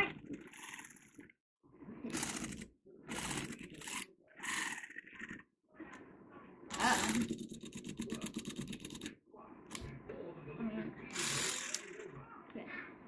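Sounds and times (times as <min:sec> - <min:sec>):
electric knife sawing pumpkin: 0:11.1 - 0:11.8.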